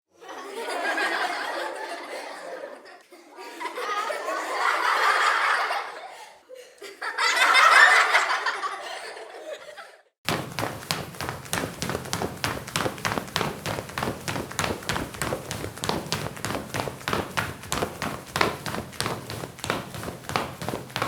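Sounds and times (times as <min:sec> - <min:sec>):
crowd laughing: 0:00.1 - 0:10.1
quick taps: 0:10.3 - 0:21.0.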